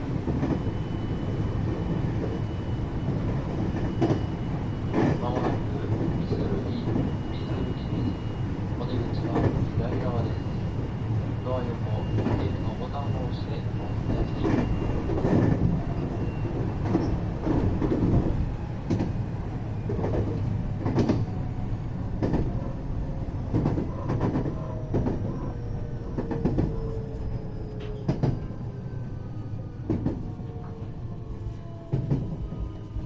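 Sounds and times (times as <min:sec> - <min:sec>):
train wheels rumbling on rail: 0:00.0 - 0:33.0
rail joint clacks: 0:03.0 - 0:08.2, 0:08.8 - 0:19.2, 0:19.9 - 0:21.4, 0:23.5 - 0:27.0, 0:27.7 - 0:28.6.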